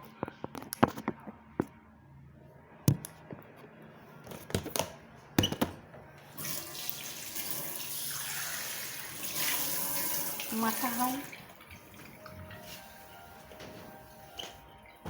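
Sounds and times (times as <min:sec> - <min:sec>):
tap water running into sink: 0:06.4 - 0:12.8.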